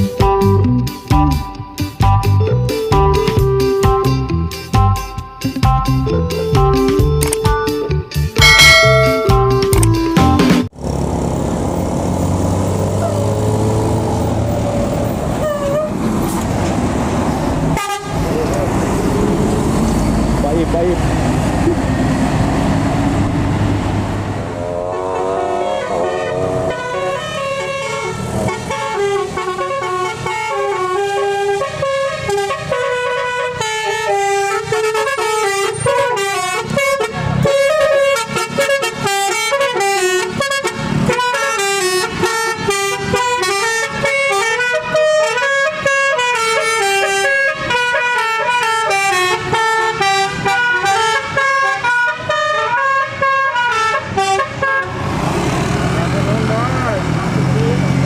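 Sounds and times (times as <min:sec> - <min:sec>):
multi-tone bus horn playing a tune: 0:15.4 - 0:16.0, 0:17.7 - 0:18.4, 0:24.5 - 0:55.0.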